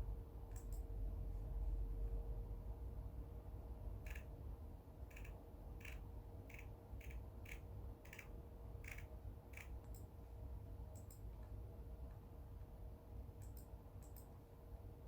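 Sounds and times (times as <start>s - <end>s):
low steady hum: 0.0s - 15.0s
faint sharp clicks: 13.4s - 14.3s.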